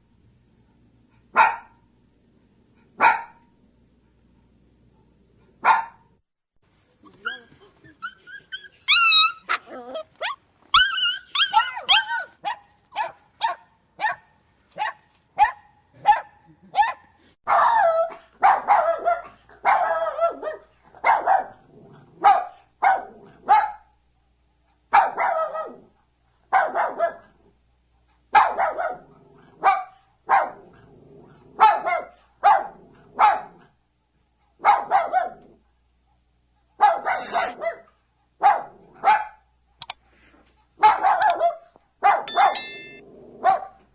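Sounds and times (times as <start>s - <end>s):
dogs barking: 11.6s - 21.6s, 26.5s - 27.2s, 28.4s - 29.0s, 31.6s - 33.6s, 34.6s - 35.4s, 36.8s - 39.4s, 40.8s - 43.8s.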